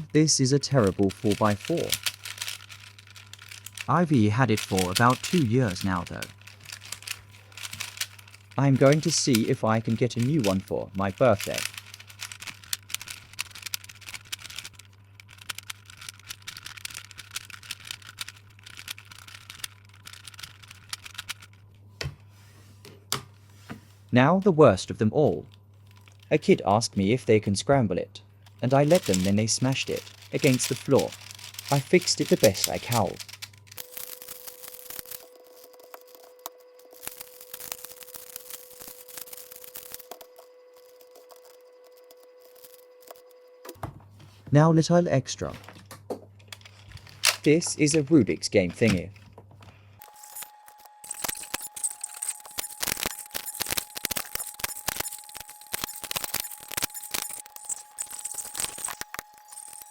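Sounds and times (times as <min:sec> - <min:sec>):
puzzle cube plastic clicks: 0:00.5 - 0:21.6, 0:28.5 - 0:36.2, 0:50.0 - 0:59.9.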